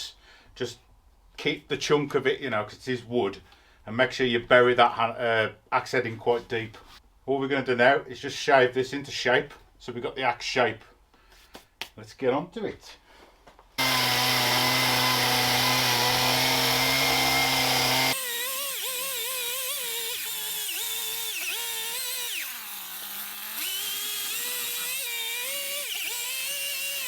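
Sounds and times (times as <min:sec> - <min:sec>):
chainsaw cutting wood: 0:13.8 - 0:27.0.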